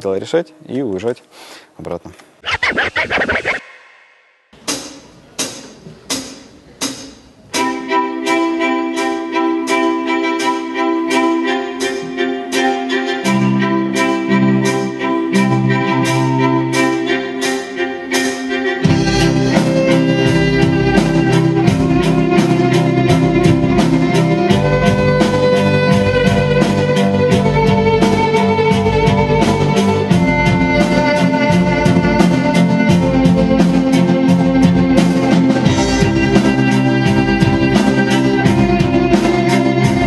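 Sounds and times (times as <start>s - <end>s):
bowed strings melody: 7.6s - 40.0s
fast rock drum beat: 18.9s - 40.0s.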